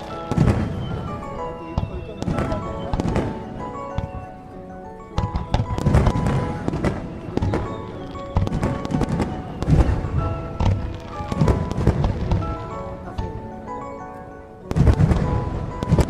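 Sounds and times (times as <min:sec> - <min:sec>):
fireworks bangs and crackling: 0:00.0 - 0:13.9, 0:14.7 - 0:16.0
melodic music: 0:00.0 - 0:16.0.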